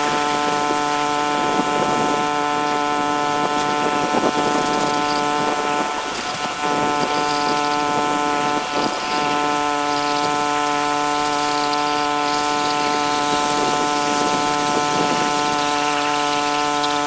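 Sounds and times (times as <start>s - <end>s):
pressure washer spraying: 0.0s - 17.0s.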